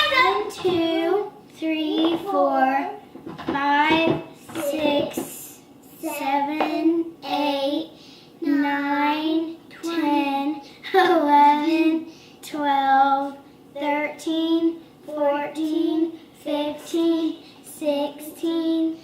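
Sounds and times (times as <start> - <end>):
child singing: 3.5 - 8.7, 13.1 - 19.0.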